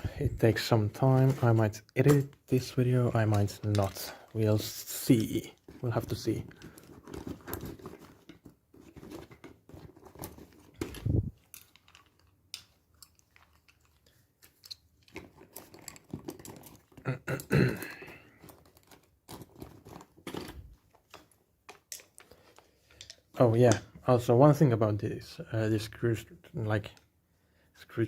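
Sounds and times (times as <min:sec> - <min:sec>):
tool bag rustling: 0:05.6 - 0:12.2, 0:14.5 - 0:17.0, 0:18.0 - 0:21.2.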